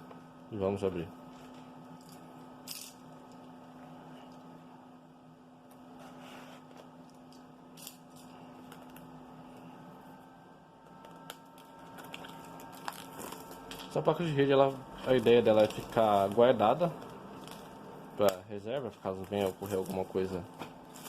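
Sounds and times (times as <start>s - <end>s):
low electrical hum: 0.0s - 21.0s
plastic wrap scratching and rustling: 11.4s - 18.3s, 19.0s - 21.0s.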